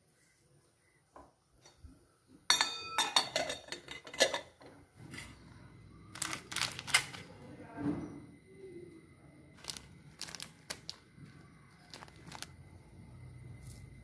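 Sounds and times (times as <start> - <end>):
kitchen utensils clinking: 2.5 - 5.4.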